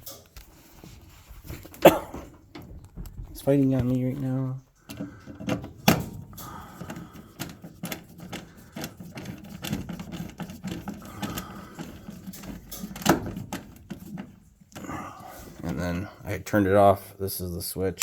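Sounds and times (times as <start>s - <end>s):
metallic clicks and rattling: 0.0s - 0.5s, 2.4s - 14.9s.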